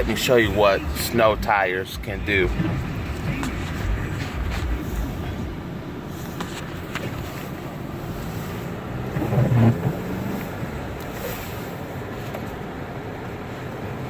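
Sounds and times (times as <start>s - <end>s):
low hum: 0.0s - 11.1s
tyres hissing through snow: 6.0s - 12.0s.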